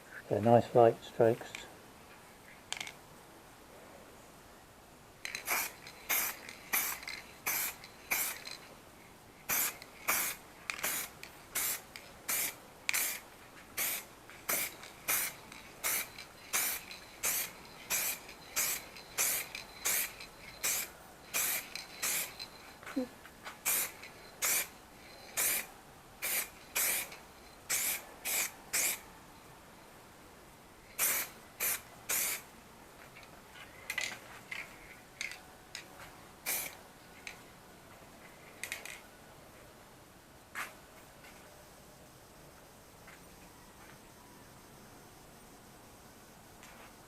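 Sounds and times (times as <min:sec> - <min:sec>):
spray can hissing bursts: 0:05.3 - 0:08.6, 0:09.5 - 0:22.5, 0:23.6 - 0:24.7, 0:25.3 - 0:29.0, 0:31.0 - 0:32.5, 0:36.5 - 0:36.8.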